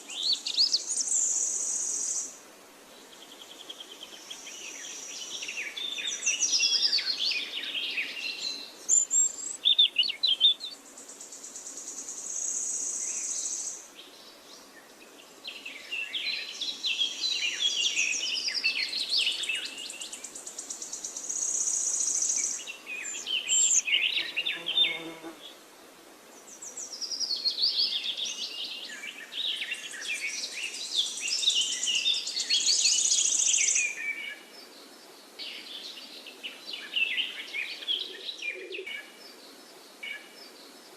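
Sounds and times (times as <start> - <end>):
songbird singing trills: 3.2 - 25.4.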